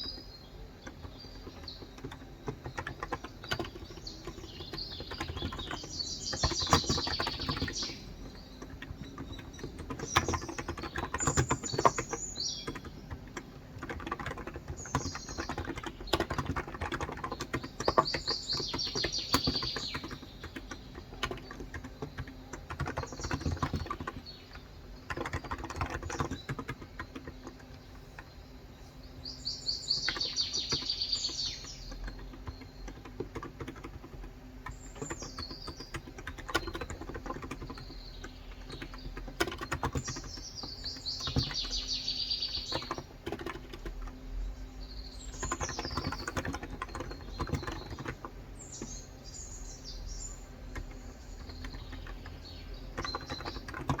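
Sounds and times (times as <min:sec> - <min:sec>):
birds chirping: 0:00.0 - 0:54.0
soft keyboard typing: 0:00.0 - 0:54.0.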